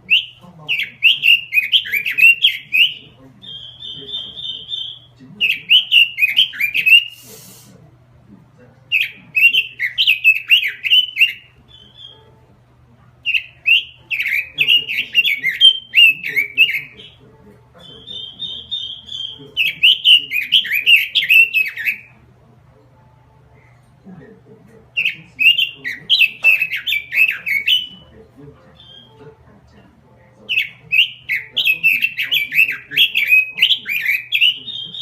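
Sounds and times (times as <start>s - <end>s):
bird trills: 0.0s - 7.4s, 8.9s - 12.4s, 13.2s - 17.2s, 17.8s - 22.3s, 25.0s - 29.4s, 30.3s - 35.0s
bird warbling song: 0.0s - 7.5s, 8.9s - 12.5s, 13.2s - 22.3s, 24.8s - 35.0s.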